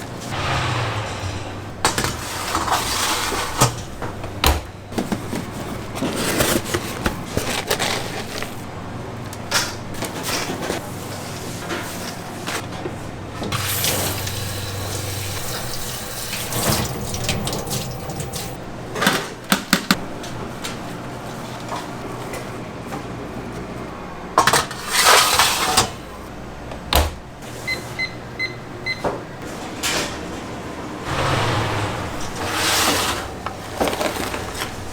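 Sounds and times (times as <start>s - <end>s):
water running at a sink: 13.6s - 18.6s
utensils and dishes clattering: 13.6s - 19.2s.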